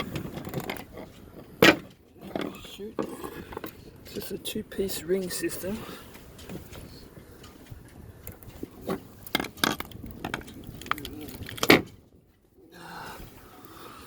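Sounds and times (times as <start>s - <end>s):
metallic clicks and knocks: 0.0s - 12.2s.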